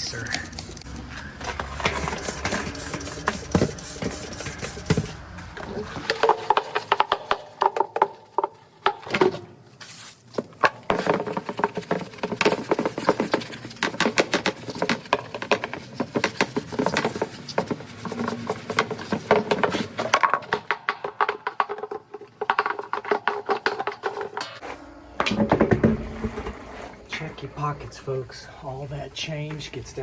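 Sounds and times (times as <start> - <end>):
brush scrubbing metal: 0.0 - 5.1, 11.1 - 20.0.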